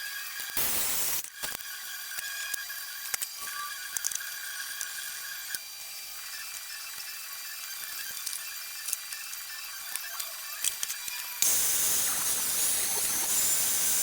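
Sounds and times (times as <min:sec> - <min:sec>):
small mechanical clicks: 0:00.1 - 0:14.0
power tool rushing noise: 0:11.4 - 0:14.0.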